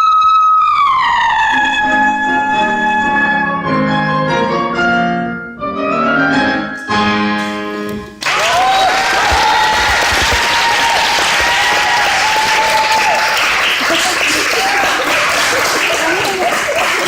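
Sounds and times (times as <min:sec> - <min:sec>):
melody over piano: 0:00.0 - 0:08.2
audience applause: 0:08.2 - 0:17.0.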